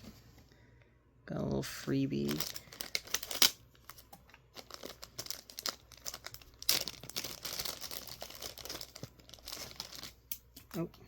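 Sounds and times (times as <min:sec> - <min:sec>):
packaging crinkling and tearing: 0:02.2 - 0:10.8.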